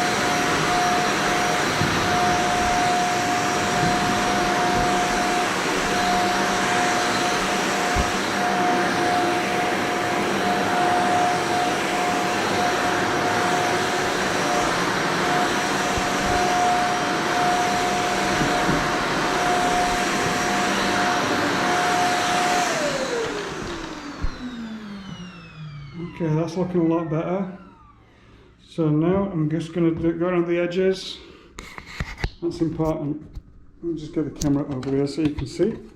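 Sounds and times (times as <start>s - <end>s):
vacuum cleaner running on carpet: 0.0s - 28.0s
vacuum motor winding down: 0.0s - 28.1s.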